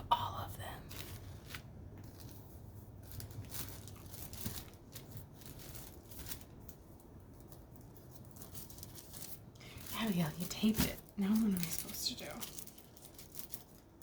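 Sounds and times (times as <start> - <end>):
paper rustling and crinkling: 0.8 - 14.0.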